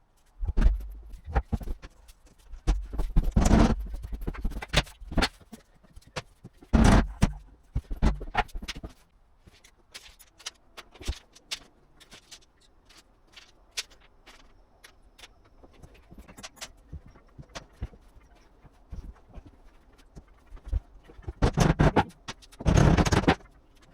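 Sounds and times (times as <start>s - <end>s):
flooring boards knocking and scraping: 2.6s - 5.5s, 6.2s - 9.0s, 18.9s - 23.5s.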